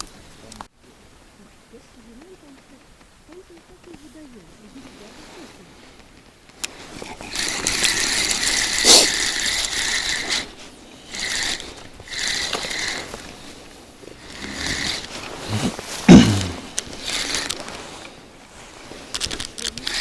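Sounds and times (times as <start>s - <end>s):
fishing reel gears whirring: 6.6s - 20.0s.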